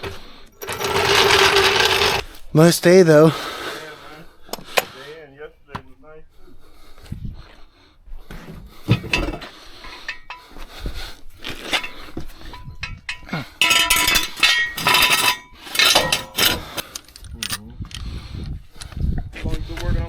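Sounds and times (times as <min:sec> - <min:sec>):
metal objects clinking: 0:00.6 - 0:02.2, 0:11.6 - 0:16.8.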